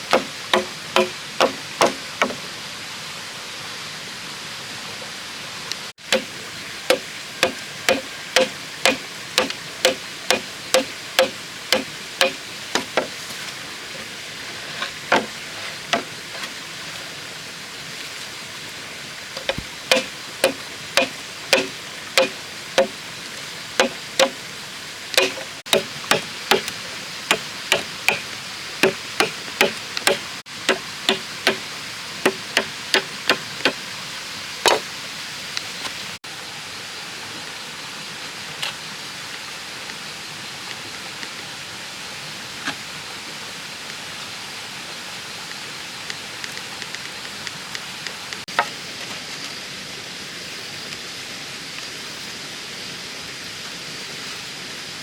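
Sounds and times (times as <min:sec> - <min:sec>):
chopping strikes on bamboo: 0:00.0 - 0:02.4, 0:06.1 - 0:06.3, 0:06.9 - 0:13.2, 0:19.4 - 0:23.0, 0:23.8 - 0:24.4, 0:25.2 - 0:31.6
steady background hiss: 0:00.0 - 0:55.0.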